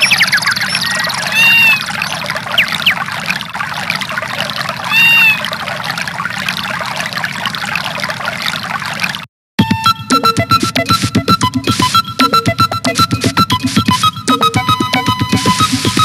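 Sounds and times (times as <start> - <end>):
whistle-like slides: 0.0 - 3.1, 9.7 - 16.0
short arched calls: 0.0 - 3.4, 4.8 - 5.6
trickling water ringtone: 0.0 - 16.0.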